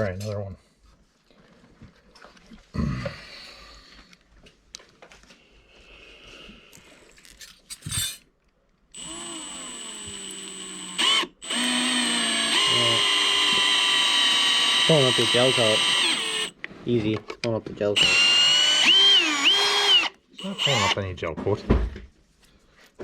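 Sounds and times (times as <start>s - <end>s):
power drill whining: 9.0s - 16.5s, 18.0s - 21.0s.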